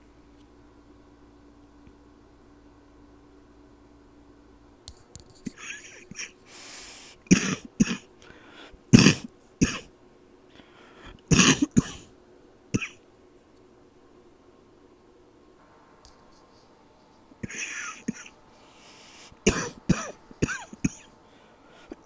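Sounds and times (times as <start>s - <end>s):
person coughing: 5.5s - 6.4s, 7.3s - 8.1s, 9.0s - 9.9s, 11.3s - 12.1s, 12.8s - 13.0s, 17.4s - 18.4s, 19.1s - 21.2s
drawn-in breath: 6.0s - 7.3s, 8.2s - 8.8s, 10.5s - 11.2s, 16.2s - 22.0s.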